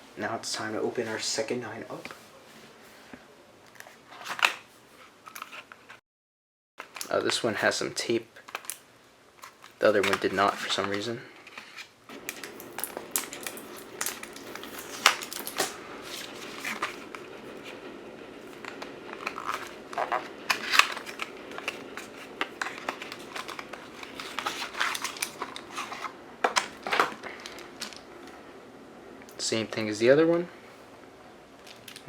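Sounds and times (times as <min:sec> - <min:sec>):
cardboard packaging rustling: 0:03.7 - 0:06.0, 0:09.4 - 0:28.5.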